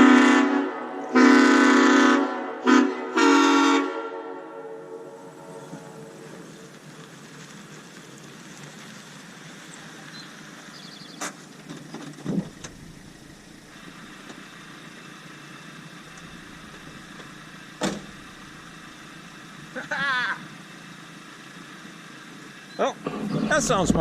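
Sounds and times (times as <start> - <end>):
small engine idling: 5.6 - 24.0.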